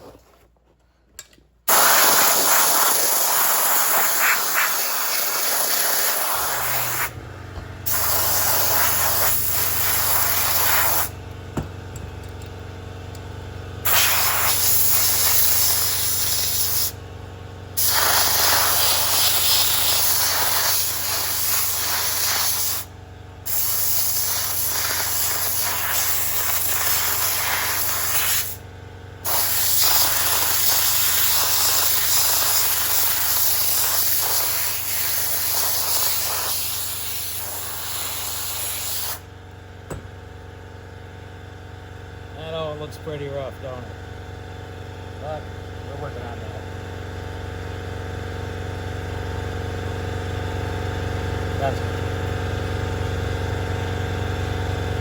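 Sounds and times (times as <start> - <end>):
air spray hissing: 1.7 - 7.1, 7.9 - 11.1, 13.9 - 17.0, 17.8 - 22.9, 23.5 - 28.6, 29.3 - 39.2
low machine hum: 6.2 - 20.2, 39.2 - 55.0.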